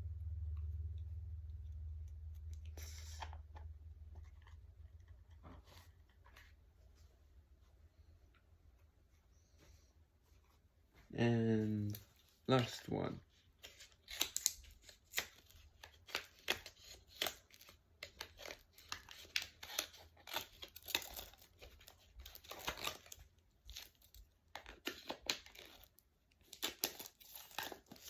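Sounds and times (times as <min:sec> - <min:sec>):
packaging tearing and crinkling: 0:13.5 - 0:28.0.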